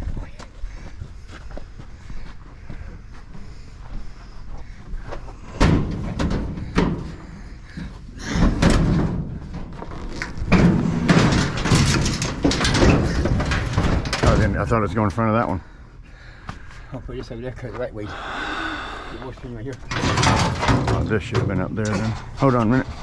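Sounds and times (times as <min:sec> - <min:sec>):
metal clatter and knocks: 0:05.5 - 0:15.1, 0:19.8 - 0:23.0
metal scraping rattle: 0:08.4 - 0:15.2, 0:19.7 - 0:23.0
scrap metal bangs: 0:10.4 - 0:15.0, 0:19.8 - 0:23.0.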